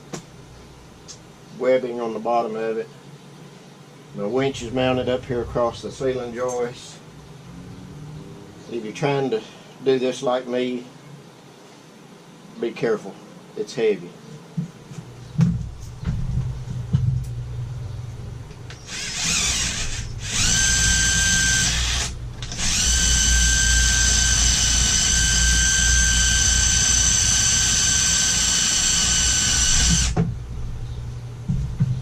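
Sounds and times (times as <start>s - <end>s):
electric winch motor whining: 18.8s - 30.2s
knocks: 31.5s - 32.0s.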